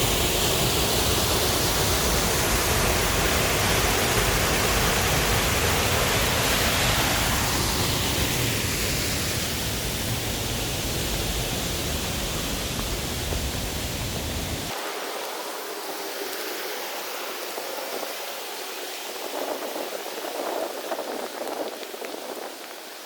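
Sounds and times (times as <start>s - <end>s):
mountain stream rushing: 0.0s - 23.0s
deep rumble: 7.0s - 14.7s.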